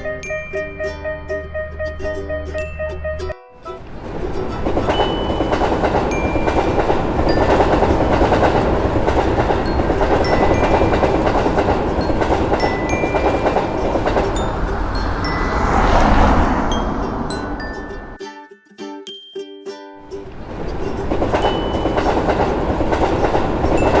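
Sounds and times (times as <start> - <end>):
train rumbling past on rails: 3.8 - 18.2, 20.3 - 24.0.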